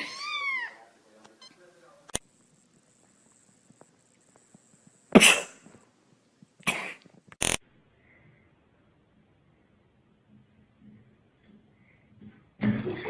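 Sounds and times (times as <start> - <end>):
sneeze-like bursts: 5.1 - 5.7, 6.6 - 7.1.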